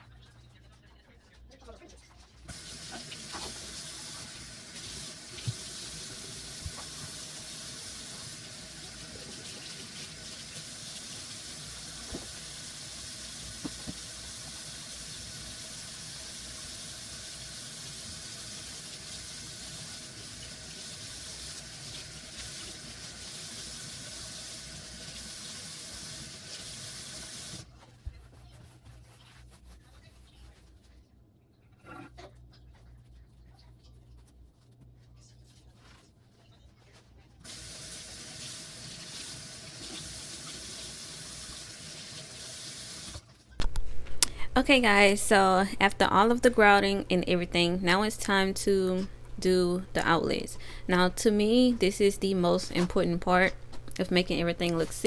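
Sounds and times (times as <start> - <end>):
water running from a tap: 2.5 - 27.6, 37.4 - 43.2.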